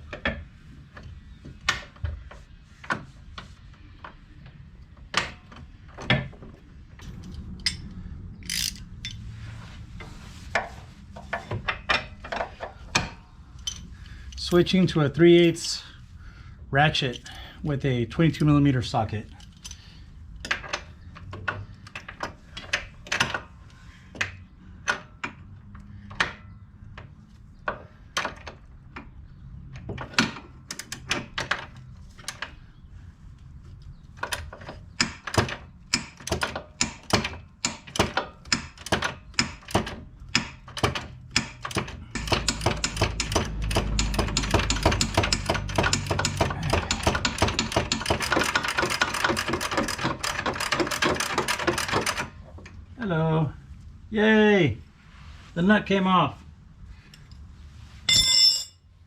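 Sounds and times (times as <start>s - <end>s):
ratchet clicking: 8.4s - 9.2s, 40.3s - 52.3s.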